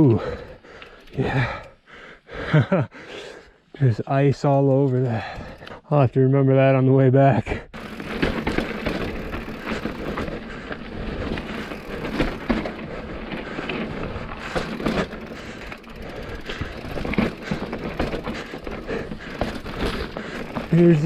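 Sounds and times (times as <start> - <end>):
bike rattling and knocking: 0.1 - 1.7, 4.5 - 5.7, 7.7 - 21.0
freehub ratchet clicking: 0.7 - 1.7, 11.4 - 12.5, 14.4 - 18.5
tyres rolling over rock: 7.8 - 21.0.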